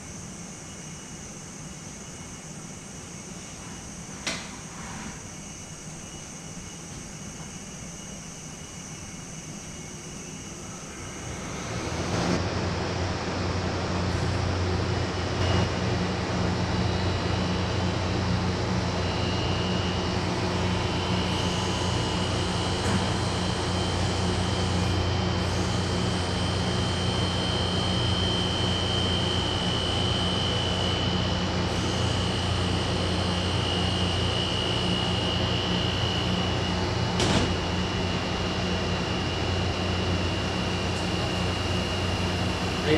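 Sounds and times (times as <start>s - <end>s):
air conditioner humming: 29.5s - 42.9s.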